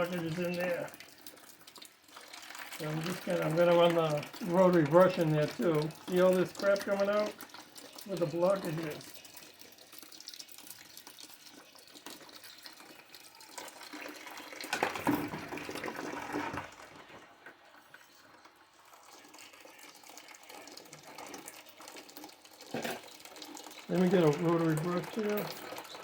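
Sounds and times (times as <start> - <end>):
water running into a bucket: 0.0 - 26.0.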